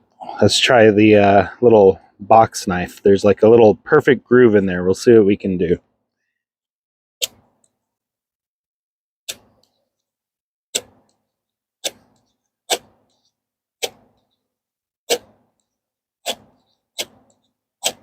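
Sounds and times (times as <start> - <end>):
blade scraping ferro rod: 13.8 - 14.1, 16.2 - 18.0.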